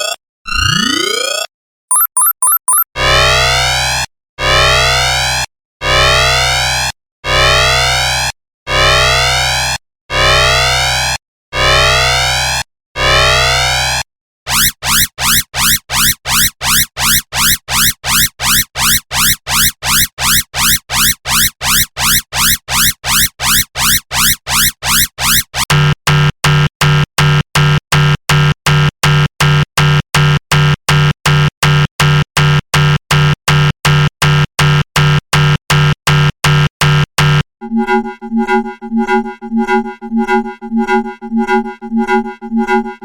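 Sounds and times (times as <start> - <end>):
fast upward-sweeping pulsing alarm: 0.0 - 3.5, 14.5 - 25.6, 37.6 - 43.0
harsh buzzing alarm: 14.5 - 25.7, 37.6 - 43.0
quiet pulsing alarm tone: 37.6 - 43.0.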